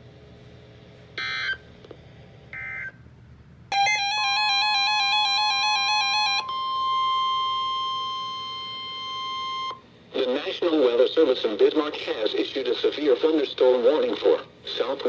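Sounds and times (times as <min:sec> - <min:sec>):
steady attention tone: 0:03.7 - 0:09.8
warbling electronic alert tone: 0:03.7 - 0:09.8
electronic data-tone bursts: 0:03.8 - 0:09.8.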